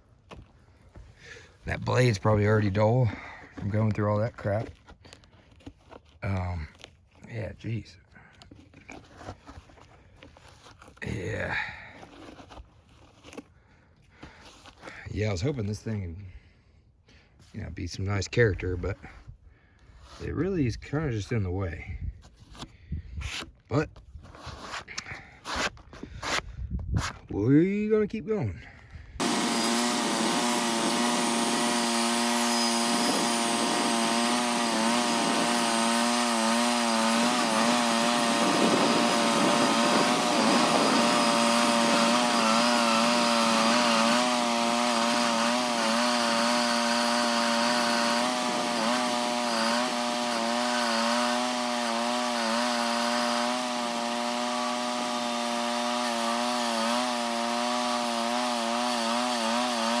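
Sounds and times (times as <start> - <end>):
sawmill blade cutting log: 29.2 - 60.0.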